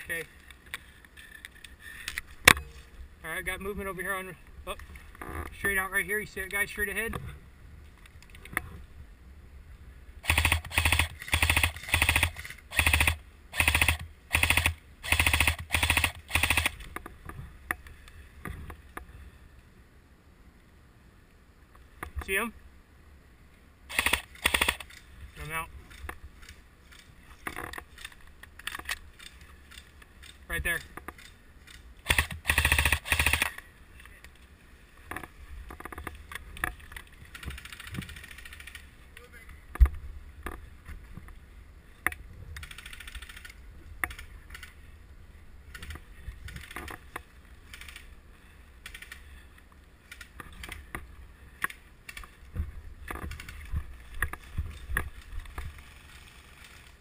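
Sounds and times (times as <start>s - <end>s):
airsoft gun firing bursts: 10.2s - 16.8s, 23.9s - 24.9s, 32.1s - 33.6s.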